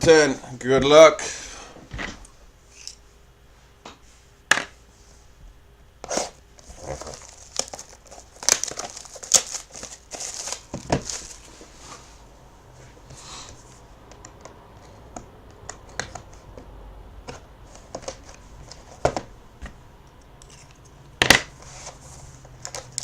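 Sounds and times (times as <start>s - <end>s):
packaging tearing and crinkling: 6.6s - 11.5s.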